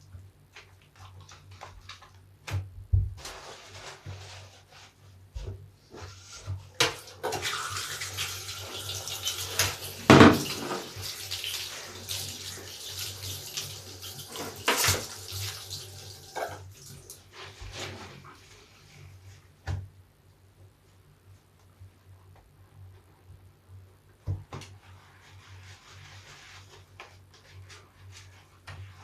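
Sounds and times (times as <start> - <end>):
soapy sponge squelching: 8.6 - 15.6, 24.9 - 29.0.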